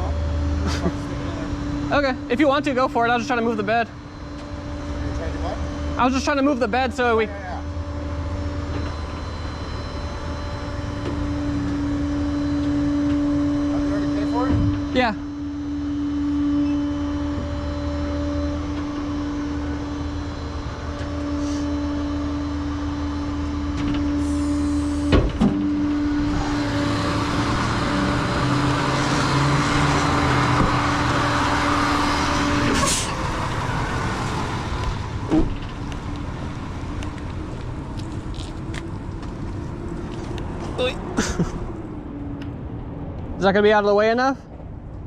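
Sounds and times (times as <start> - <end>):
hydraulic whine: 0.0 - 43.3
truck engine running: 0.0 - 43.5
hydraulic hiss: 24.2 - 25.4, 32.7 - 33.2.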